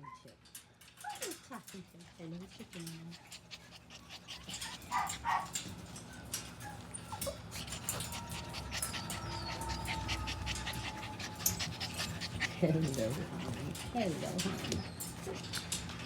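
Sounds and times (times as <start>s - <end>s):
puppies whimpering and squeaking: 0.0s - 16.0s
clicking and rustling of movement: 4.2s - 16.0s.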